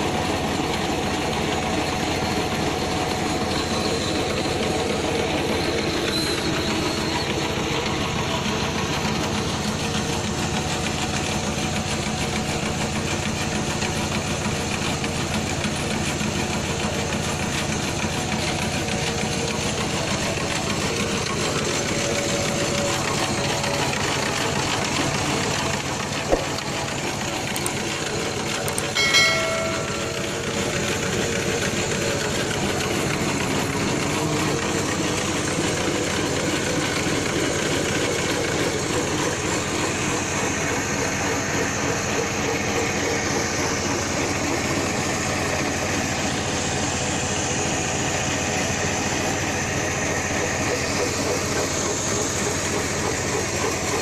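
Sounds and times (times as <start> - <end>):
boring machine running: 0.0 - 54.0
short metallic ring: 28.8 - 31.0.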